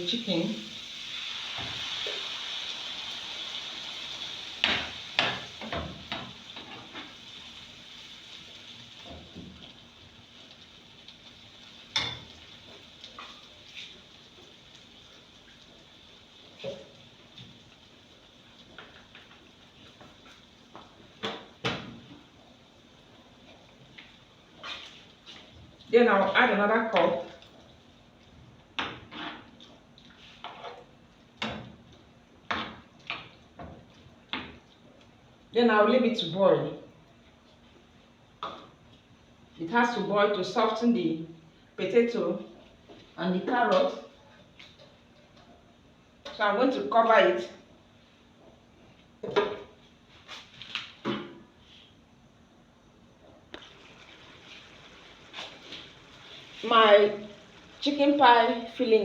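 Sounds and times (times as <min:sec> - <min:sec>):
faint hiss from pot: 0:00.0 - 0:20.5, 0:53.5 - 0:59.0.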